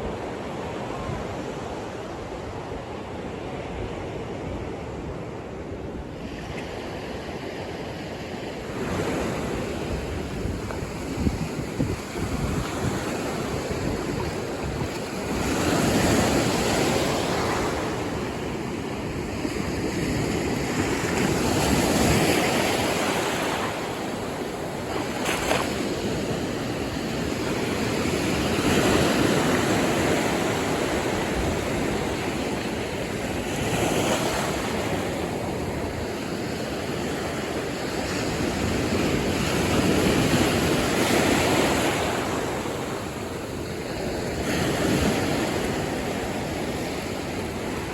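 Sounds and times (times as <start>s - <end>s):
waves breaking on beach: 0.0s - 47.9s
wind: 0.0s - 47.9s.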